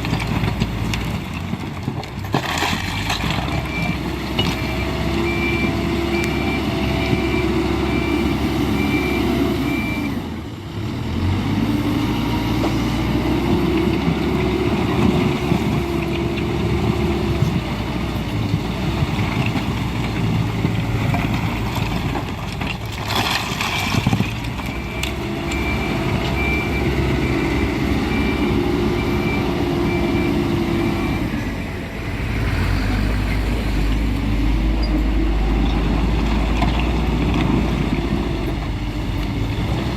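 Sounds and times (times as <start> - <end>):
heavy diesel machinery working: 0.0 - 39.9
reversing alarm beeping: 4.6 - 10.2, 24.7 - 31.4.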